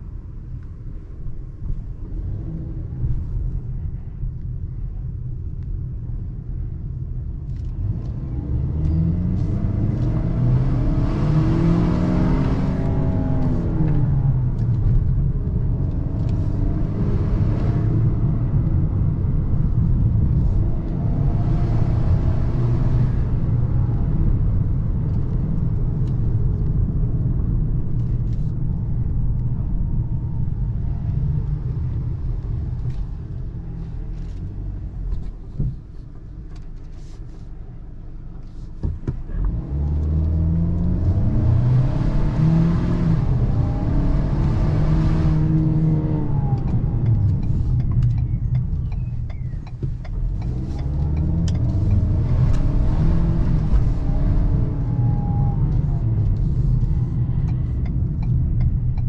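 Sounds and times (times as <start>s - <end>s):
road rumble: 0.0s - 59.0s
truck engine accelerating: 39.3s - 59.0s.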